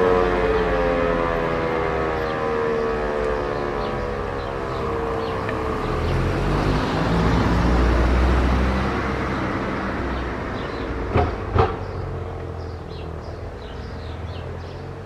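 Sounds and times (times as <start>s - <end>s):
siren winding down: 0.0s - 7.2s
sharp knocks: 11.1s - 11.9s.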